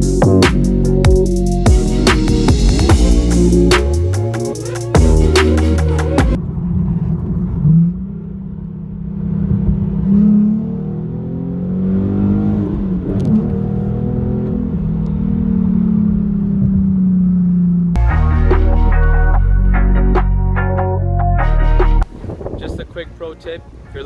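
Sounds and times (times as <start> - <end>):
sports car engine revving: 0.0 - 18.1.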